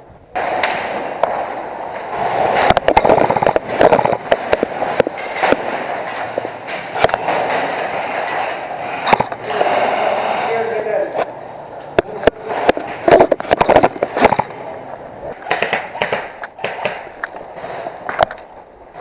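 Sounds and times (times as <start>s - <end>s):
airsoft guns firing: 15.4s - 17.8s.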